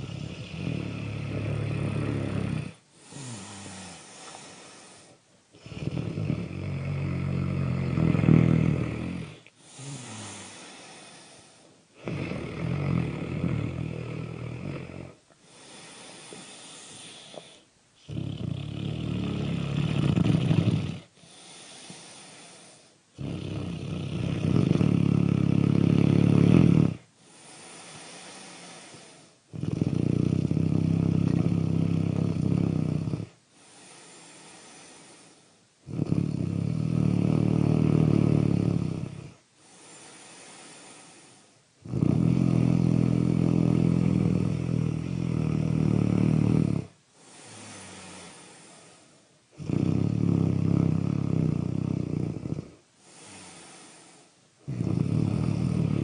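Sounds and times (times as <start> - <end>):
loud low snoring: 0.0 - 56.0
breathy out-breath: 3.0 - 5.2, 15.4 - 17.7, 21.2 - 23.0, 27.2 - 29.4, 47.2 - 49.3, 53.0 - 54.4.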